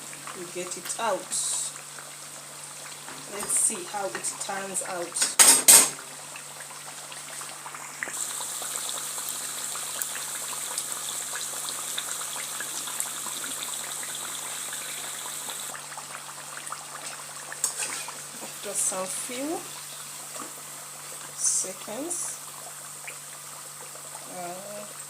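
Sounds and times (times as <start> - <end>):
potato slices sizzling in hot oil: 0.0 - 25.0.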